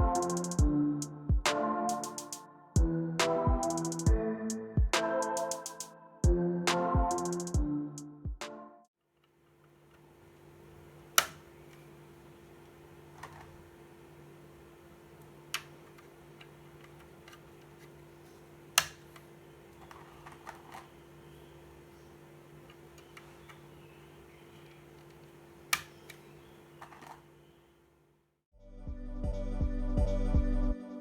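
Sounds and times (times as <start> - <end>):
loud music: 0.0 - 8.7, 28.8 - 31.0.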